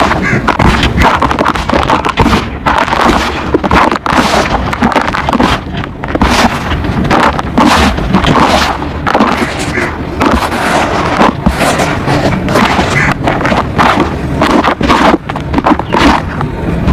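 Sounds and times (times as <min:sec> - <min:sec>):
mud squelching by hand: 0:00.0 - 0:16.5.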